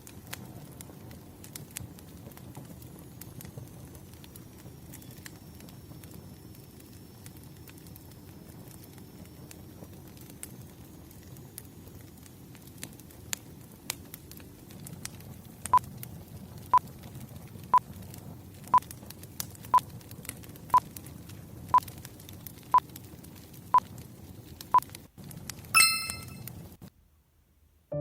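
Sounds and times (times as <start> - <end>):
wood fire crackling: 0.0 - 26.9
electronic timer beeps: 25.8 - 26.4.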